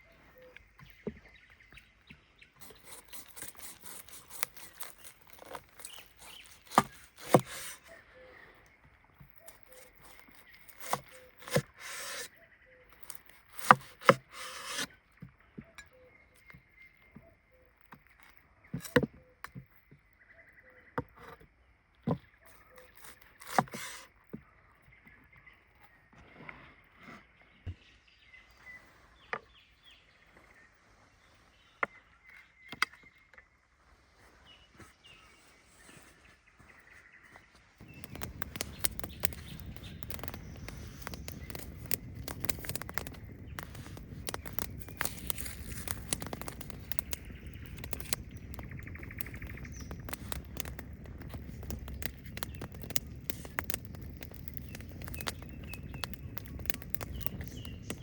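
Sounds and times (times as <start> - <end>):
faint bird chirps: 0.0 - 58.0
dense crackling and pattering: 2.6 - 7.7, 37.8 - 58.0.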